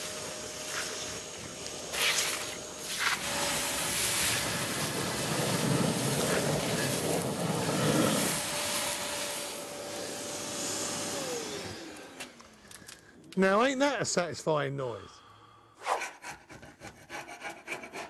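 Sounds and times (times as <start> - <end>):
vacuum motor whining: 0.0 - 13.0
sludge rushing up hose: 1.9 - 12.0.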